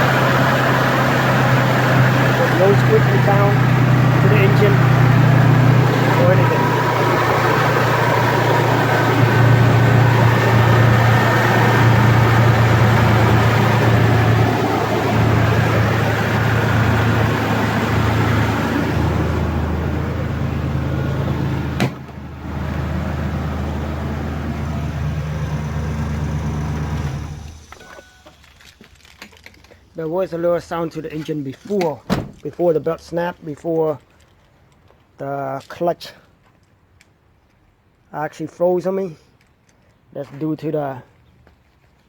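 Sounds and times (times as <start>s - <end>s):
truck engine running: 0.0s - 31.2s.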